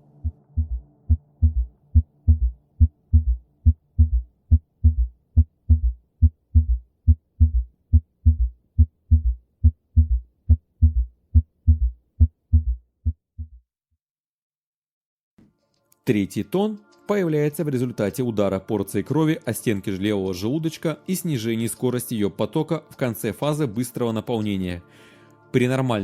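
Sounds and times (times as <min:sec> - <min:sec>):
heart sounds gallop rhythm: 0:00.2 - 0:13.6.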